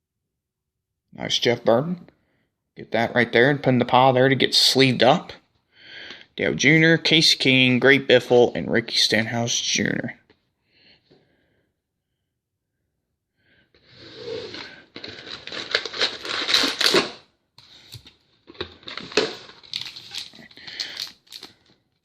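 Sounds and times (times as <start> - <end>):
foil wrapper crinkling and tearing: 14.2 - 21.8
cards being handled: 14.5 - 21.8.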